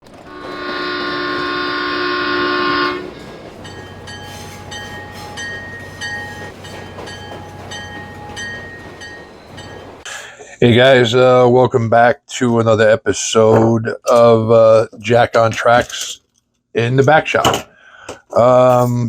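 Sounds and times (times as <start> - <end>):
train horn: 0.1 - 9.4
railroad crossing bell: 0.1 - 10.1.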